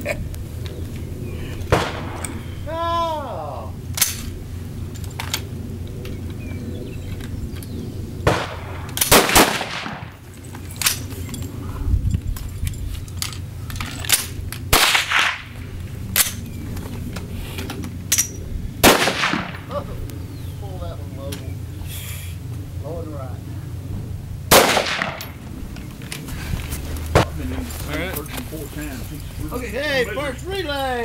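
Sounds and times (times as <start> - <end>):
distant rifle shots: 1.7 - 2.4, 8.2 - 10.3, 14.2 - 16.5, 18.8 - 19.8, 24.5 - 25.6
rifle shots: 1.7 - 2.4, 8.2 - 10.2, 14.1 - 15.6, 18.8 - 19.7, 24.5 - 25.4.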